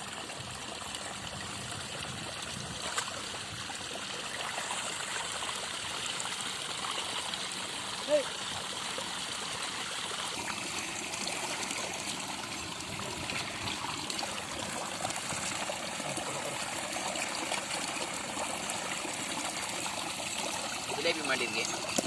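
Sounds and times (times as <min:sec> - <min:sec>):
shallow water trickling: 0:00.0 - 0:22.0.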